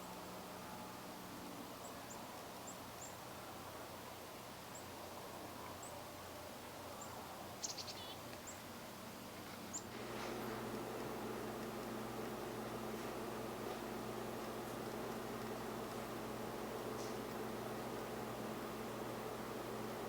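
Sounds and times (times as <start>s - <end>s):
background hiss: 0.0s - 20.0s
low hum: 10.0s - 20.0s.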